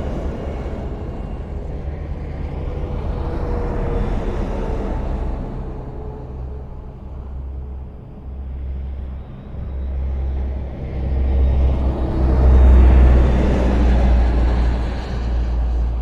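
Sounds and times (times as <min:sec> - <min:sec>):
highway traffic rumble: 0:00.0 - 0:16.0.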